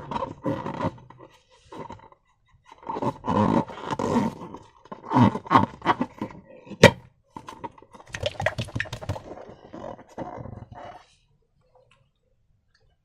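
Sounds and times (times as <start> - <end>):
slime squelching by hand: 8.0 - 9.7.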